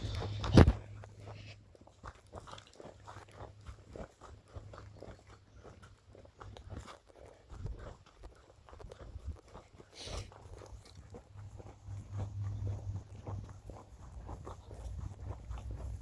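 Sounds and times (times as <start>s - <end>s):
footsteps crunching on path: 0.0s - 16.0s.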